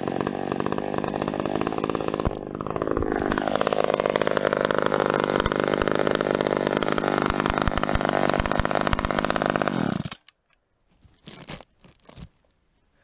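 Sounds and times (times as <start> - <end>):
chainsaw engine revving: 0.0 - 10.3.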